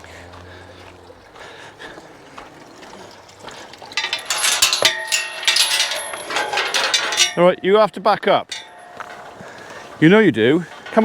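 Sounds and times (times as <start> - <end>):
metal clanking and rattling: 3.8 - 11.0.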